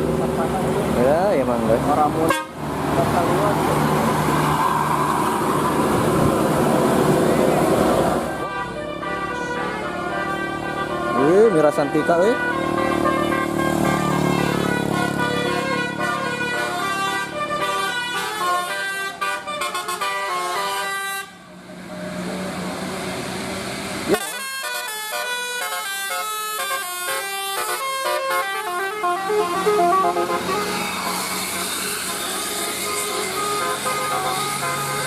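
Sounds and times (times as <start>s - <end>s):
road noise: 0.0s - 35.0s
multi-tone air horn melody: 2.2s - 2.6s, 8.2s - 21.4s, 24.1s - 35.0s.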